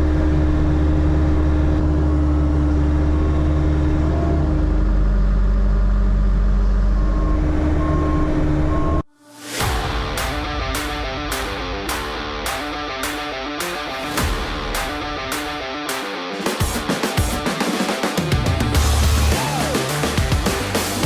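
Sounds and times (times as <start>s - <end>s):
large engine running: 0.0s - 8.8s, 18.3s - 21.0s.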